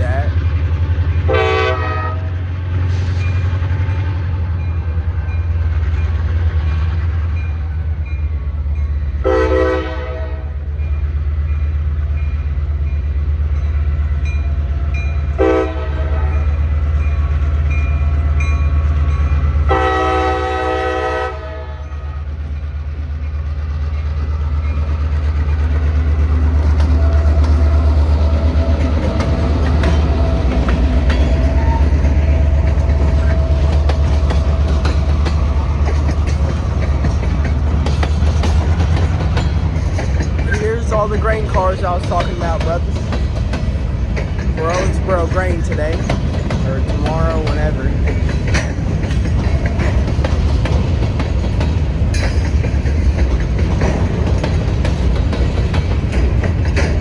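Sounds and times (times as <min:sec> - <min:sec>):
diesel locomotive rumbling: 0:00.0 - 0:57.0
locomotive air horn blasts: 0:01.3 - 0:02.3, 0:09.2 - 0:10.5, 0:15.4 - 0:16.4, 0:19.7 - 0:21.9.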